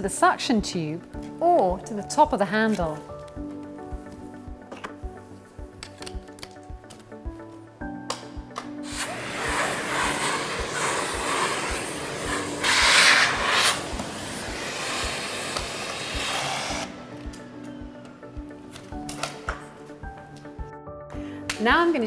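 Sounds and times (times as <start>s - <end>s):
background music with steady beat: 0.0s - 22.0s
vacuum cleaner running: 8.8s - 17.0s.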